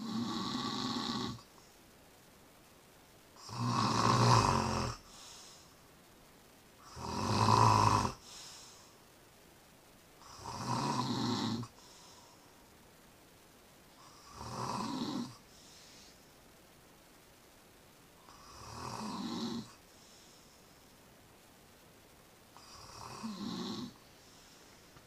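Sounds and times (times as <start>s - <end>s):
person snoring: 0.0s - 1.4s, 3.4s - 5.5s, 6.8s - 8.3s, 10.2s - 11.7s, 14.0s - 16.2s, 18.2s - 19.8s, 22.6s - 24.0s.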